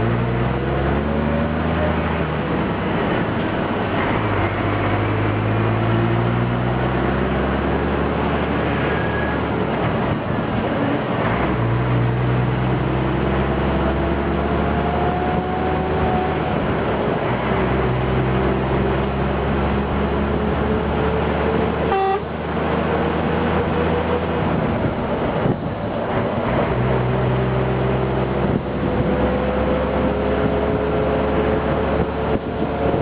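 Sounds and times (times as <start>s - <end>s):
truck engine under heavy load: 0.0s - 33.0s
truck horn toot: 21.8s - 22.4s.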